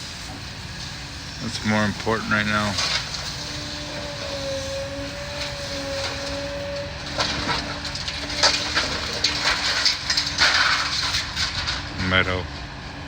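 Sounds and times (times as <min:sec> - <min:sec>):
excavator engine and hydraulic whine: 0:00.0 - 0:13.0
debris cracking and crunching: 0:00.8 - 0:12.6.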